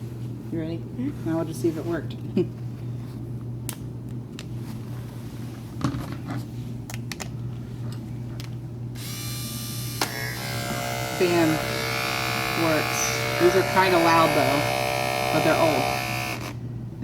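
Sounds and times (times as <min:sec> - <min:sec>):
hair clippers buzzing: 0:09.0 - 0:16.6.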